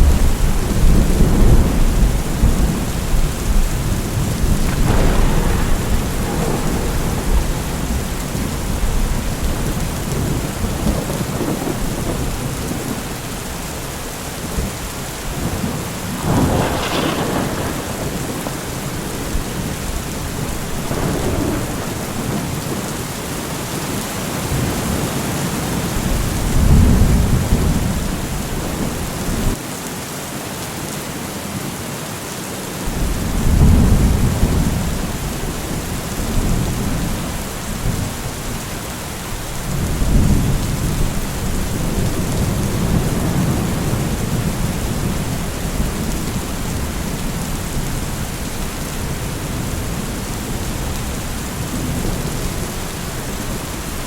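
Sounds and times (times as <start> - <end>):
thunder rumbling: 0.0 - 25.1, 25.8 - 29.6, 32.9 - 54.0
heavy rain: 0.0 - 54.0.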